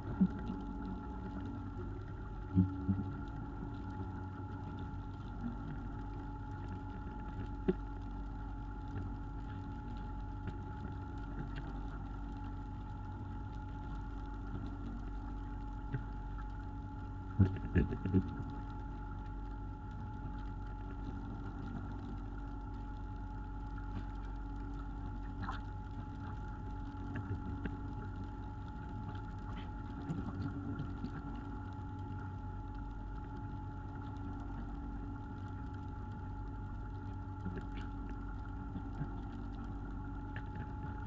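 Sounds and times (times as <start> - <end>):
boat engine droning: 0.0 - 13.5.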